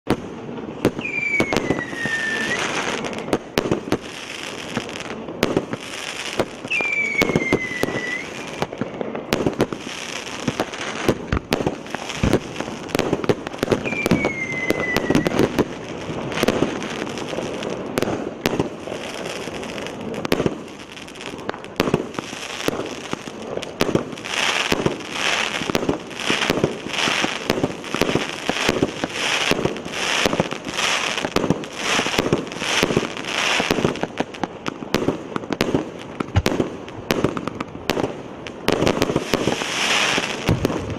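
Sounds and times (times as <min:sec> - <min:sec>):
fireworks bangs and crackling: 0:00.0 - 0:40.9
falling firework whistles: 0:00.8 - 0:05.1, 0:05.7 - 0:20.6, 0:38.7 - 0:40.9.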